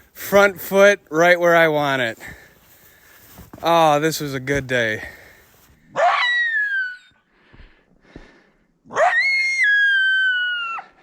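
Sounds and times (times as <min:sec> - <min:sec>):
coyote crying: 0:05.9 - 0:07.2, 0:08.9 - 0:11.0.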